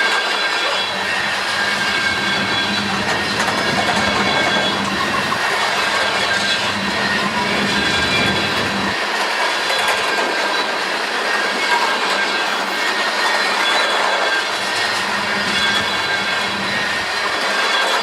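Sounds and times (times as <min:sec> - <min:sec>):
freight train wheels on rails: 0:00.0 - 0:18.0
high wheel squeal: 0:00.1 - 0:18.0
low rumble: 0:01.0 - 0:09.0.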